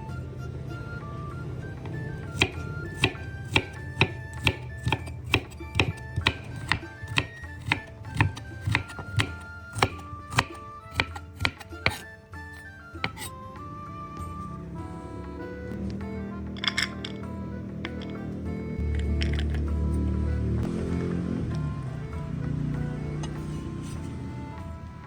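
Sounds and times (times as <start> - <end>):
background music: 0.0 - 25.0
knife chopping on cutting board: 1.9 - 13.3.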